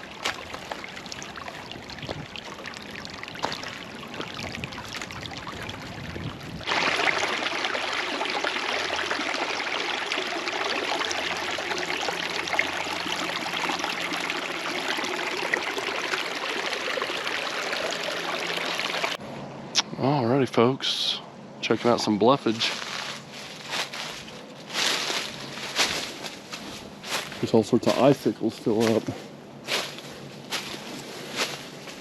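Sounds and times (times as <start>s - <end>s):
creek water rushing: 0.0s - 6.0s, 6.6s - 19.2s.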